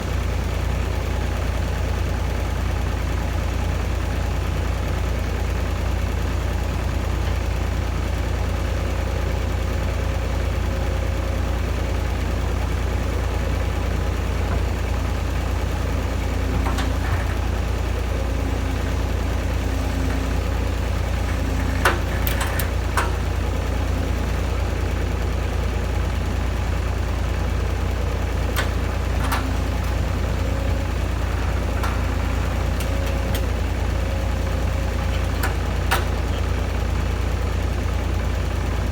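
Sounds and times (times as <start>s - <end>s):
diesel excavator engine rumbling: 0.0s - 38.9s
sharp clicks or knocks: 16.4s - 17.8s, 18.6s - 24.0s, 28.6s - 33.8s, 34.9s - 36.5s.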